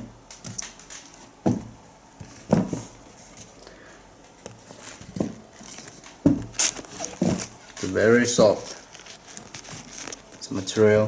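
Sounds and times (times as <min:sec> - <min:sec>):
sneaker handling knocks and rustles: 0:01.4 - 0:03.4, 0:04.5 - 0:10.7.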